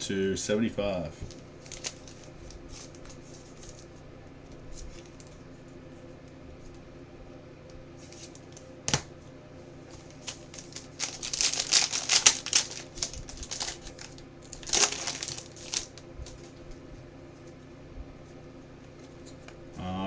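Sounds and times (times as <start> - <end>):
plastic wrapping crinkling: 1.2 - 5.4, 9.8 - 16.9.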